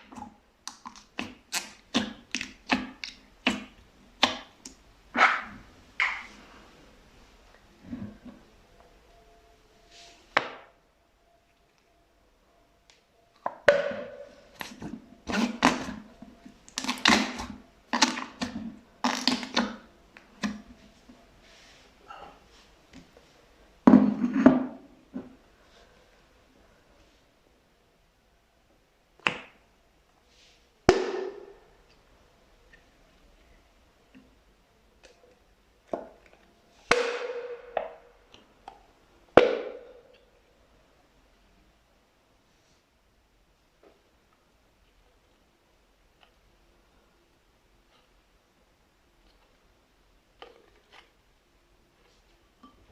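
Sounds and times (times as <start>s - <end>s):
slime squishing by hand: 0.0s - 6.5s, 13.6s - 21.1s
slime popping with ringing tail: 36.9s - 37.8s.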